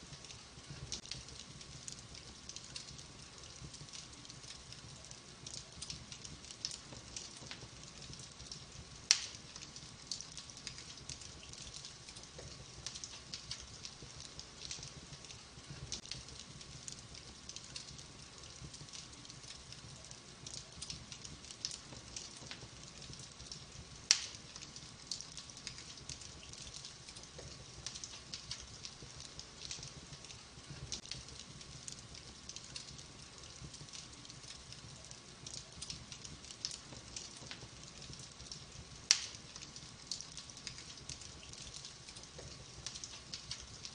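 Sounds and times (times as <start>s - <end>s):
wood fire crackling and popping: 0.0s - 43.9s.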